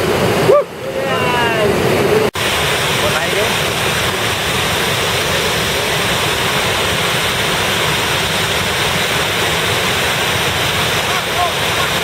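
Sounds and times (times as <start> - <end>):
whitewater rushing: 0.0 - 12.0.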